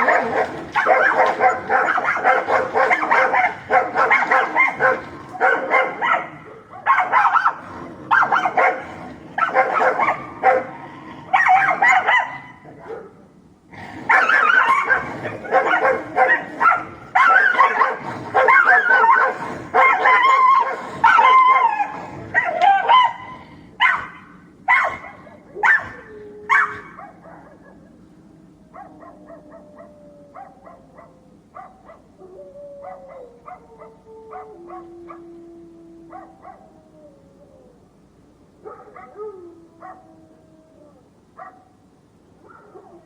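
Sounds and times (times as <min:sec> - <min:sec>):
dogs barking and snarling: 0:00.0 - 0:28.0, 0:38.6 - 0:40.3
dog yipping: 0:22.4 - 0:27.6.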